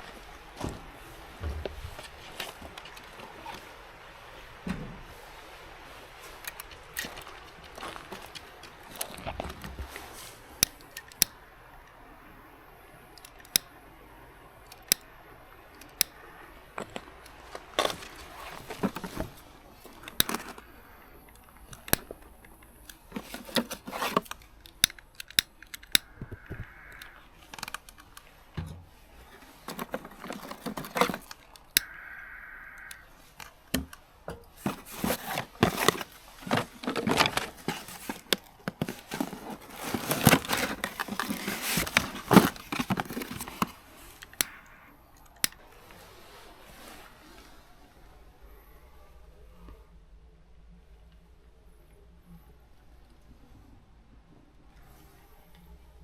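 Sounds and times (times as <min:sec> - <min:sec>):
objects being handled: 0:04.6 - 0:11.4, 0:13.1 - 0:13.8, 0:14.6 - 0:45.6
packaging crinkling and tearing: 0:06.2 - 0:11.2, 0:16.8 - 0:20.7, 0:22.9 - 0:25.9, 0:29.4 - 0:31.8, 0:34.6 - 0:44.5.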